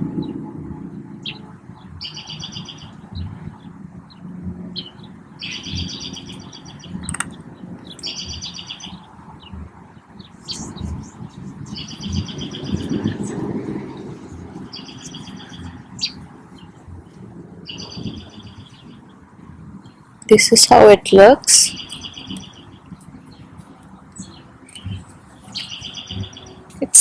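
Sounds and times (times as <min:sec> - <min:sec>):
songbird trilling: 0:01.1 - 0:04.2, 0:04.8 - 0:09.6, 0:10.3 - 0:16.8, 0:17.7 - 0:19.2, 0:21.6 - 0:27.0.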